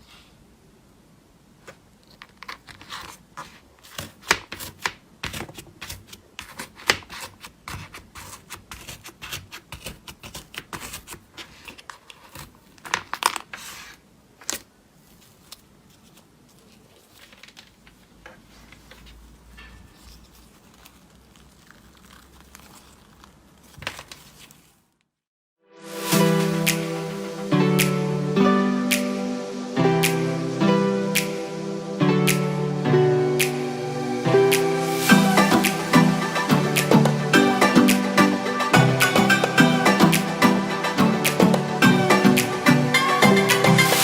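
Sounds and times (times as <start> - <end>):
slime crackling and popping: 20.4 - 24.8.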